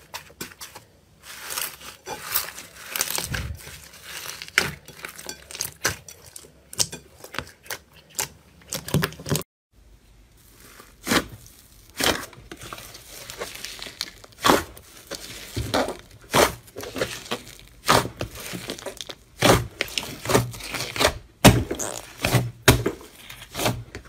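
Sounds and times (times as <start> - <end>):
slime crackling and popping: 1.4 - 5.9, 10.4 - 23.8.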